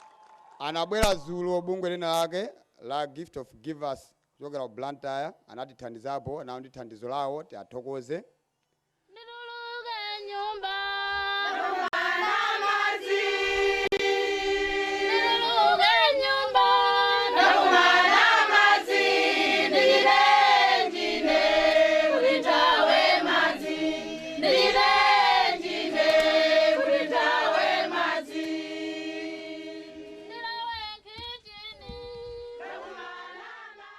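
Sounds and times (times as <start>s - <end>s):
group of voices singing: 10.3s - 30.9s, 32.5s - 33.9s.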